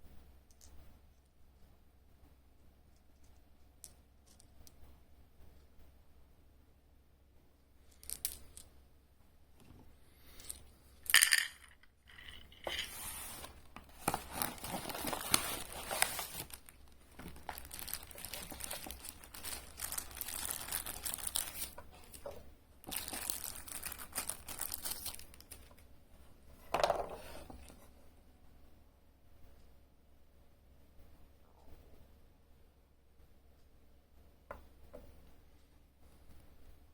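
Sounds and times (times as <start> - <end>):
plastic packaging crinkling and tearing: 12.5 - 22.2, 22.8 - 25.8.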